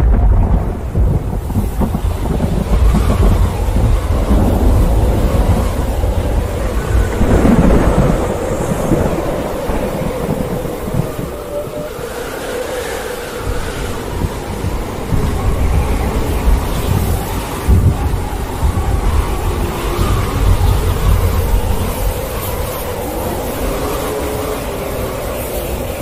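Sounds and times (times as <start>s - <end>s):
tornado wind roaring: 0.0s - 26.0s.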